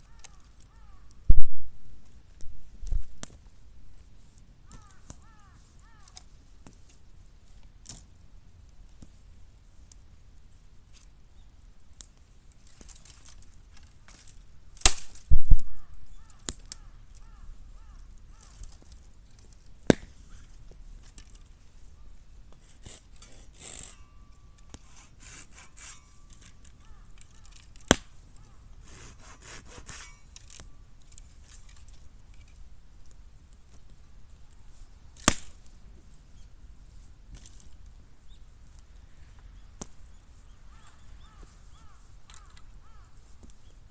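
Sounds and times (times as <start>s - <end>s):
faint small crackling: 0.0s - 10.0s, 10.8s - 25.1s
bamboo bursting with sharp cracks: 12.0s - 17.3s, 18.3s - 20.4s, 26.6s - 28.3s, 35.1s - 35.8s.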